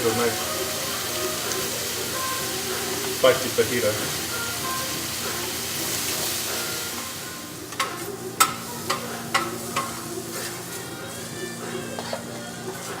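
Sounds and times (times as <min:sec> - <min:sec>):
vegetables sizzling on a grill: 0:00.0 - 0:13.0
spatula scraping grill surface: 0:08.8 - 0:13.0.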